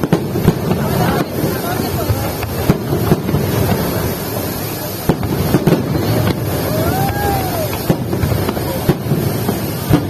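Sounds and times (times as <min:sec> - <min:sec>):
fireworks bangs: 0:00.0 - 0:10.0
fireworks crackling rumble: 0:00.0 - 0:10.0.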